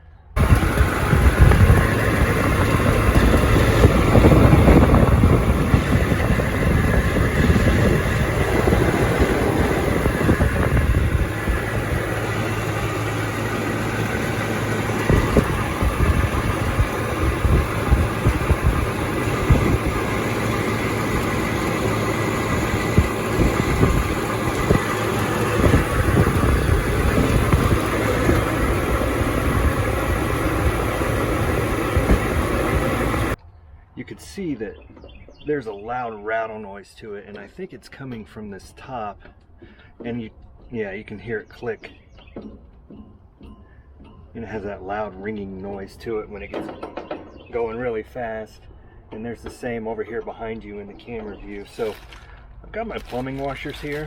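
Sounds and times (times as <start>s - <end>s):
air conditioner unit running: 0.4s - 33.4s.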